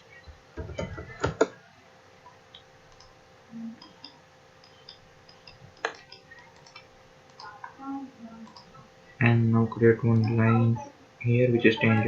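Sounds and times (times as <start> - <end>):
computer mouse clicks: 2.5 - 3.2, 3.8 - 7.8, 8.4 - 8.8.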